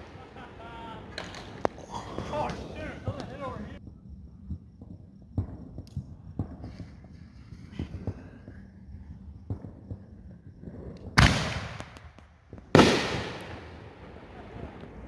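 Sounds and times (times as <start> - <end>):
firework bangs with echo: 0.0 - 3.6, 11.2 - 15.0.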